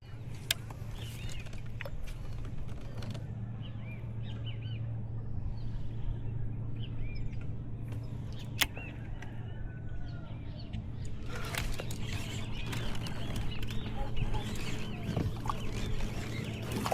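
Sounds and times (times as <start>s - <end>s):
low hum: 0.0s - 16.9s
small birds chirping: 10.5s - 16.9s.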